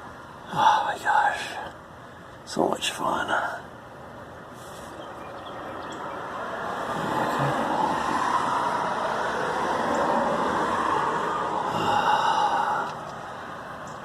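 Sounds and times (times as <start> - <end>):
road vehicle approaching: 3.8 - 14.0.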